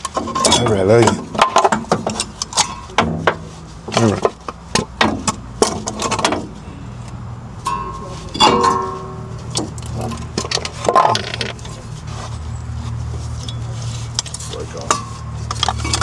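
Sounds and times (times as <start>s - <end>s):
metal tools clinking: 0.2s - 2.9s, 7.6s - 12.1s, 13.4s - 16.0s
steady low hum: 6.5s - 10.9s.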